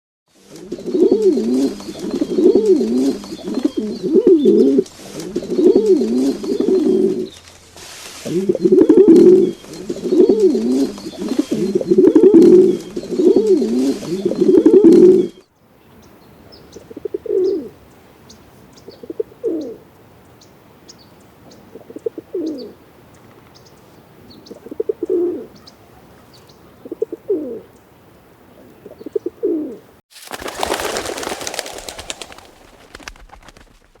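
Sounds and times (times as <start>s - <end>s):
pigeon cooing: 0.5s - 7.4s, 8.2s - 15.4s, 16.8s - 17.8s, 18.9s - 19.8s, 21.7s - 22.8s, 24.4s - 27.7s, 28.6s - 29.9s
small birds chirping: 0.7s - 7.6s, 8.2s - 29.6s, 30.2s - 33.0s
pigeon wings flapping: 1.6s - 3.6s, 30.1s - 34.0s.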